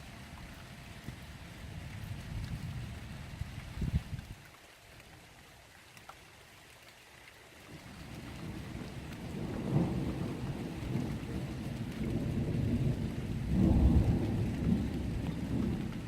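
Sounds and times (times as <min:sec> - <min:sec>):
rain falling: 0:00.0 - 0:16.0
thunder rumbling: 0:07.7 - 0:16.0.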